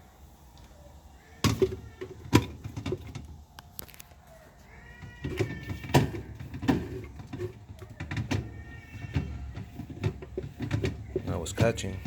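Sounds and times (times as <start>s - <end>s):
washing machine motor hum: 0.0s - 3.6s, 4.5s - 12.0s
agitator clicking and knocking: 5.0s - 12.0s.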